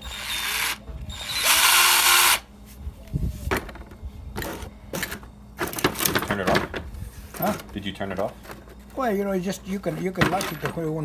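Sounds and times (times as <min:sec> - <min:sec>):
cordless drill whirring: 0:00.0 - 0:02.4.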